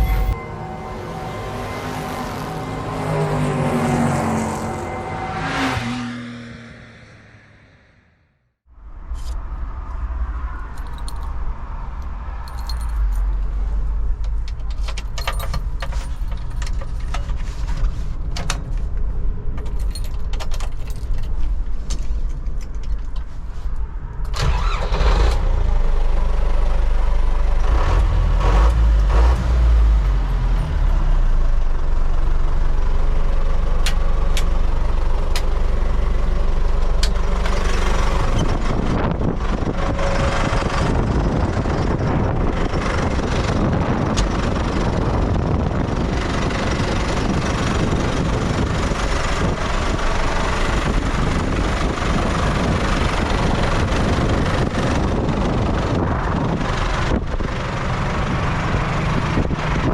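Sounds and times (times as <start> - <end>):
tractor diesel engine running: 0.0 - 5.5, 24.3 - 59.9.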